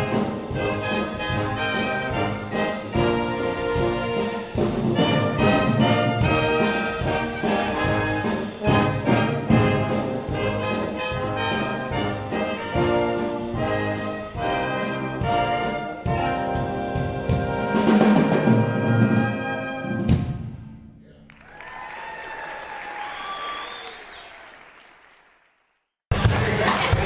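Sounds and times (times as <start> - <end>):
steady drum beat: 0.0 - 20.6
brass band playing: 0.0 - 20.7.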